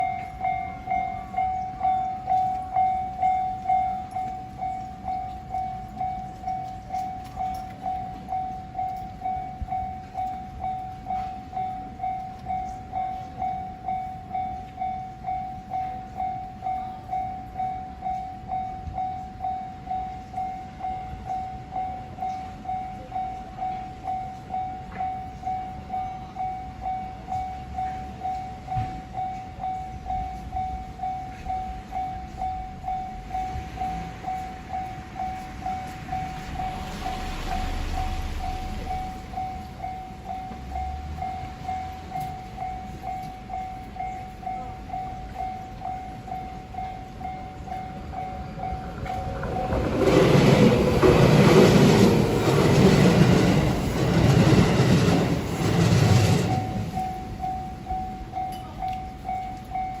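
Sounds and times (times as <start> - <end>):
electric train rumble: 0.0 - 60.0
level-crossing warning bell: 0.0 - 60.0.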